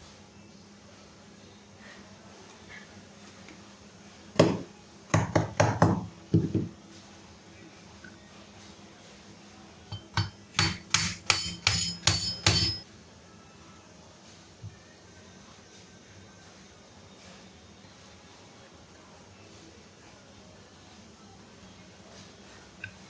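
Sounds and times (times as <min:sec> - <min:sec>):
hammer striking metal: 0:09.9 - 0:12.8.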